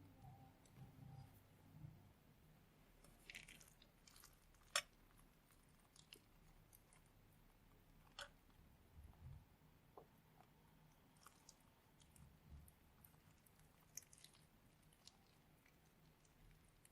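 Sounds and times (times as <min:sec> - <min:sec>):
slime squishing and crackling: 0:03.0 - 0:07.2, 0:11.1 - 0:16.9.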